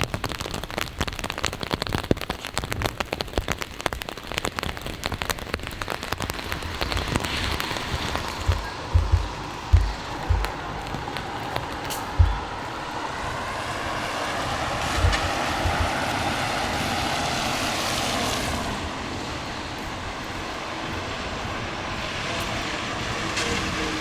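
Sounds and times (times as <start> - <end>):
tyres hissing on wet road: 2.2 - 24.0
dull low thumps: 7.8 - 13.5, 14.7 - 16.5.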